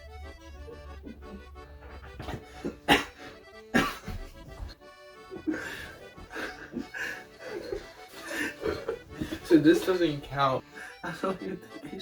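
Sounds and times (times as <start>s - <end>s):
background music with held notes: 0.0s - 12.0s
person coughing: 2.2s - 4.4s.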